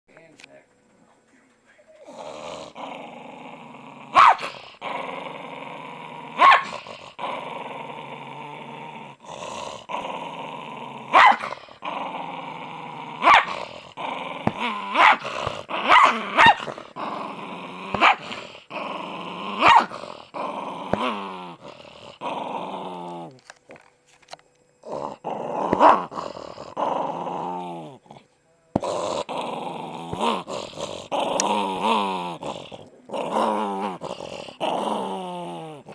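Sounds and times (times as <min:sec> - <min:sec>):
small dog growling: 0:01.8 - 0:23.9, 0:24.8 - 0:35.9
small dog barking: 0:04.1 - 0:04.6, 0:06.4 - 0:06.8, 0:11.1 - 0:11.6, 0:13.2 - 0:13.6, 0:14.9 - 0:16.7, 0:17.9 - 0:18.3, 0:19.6 - 0:20.0.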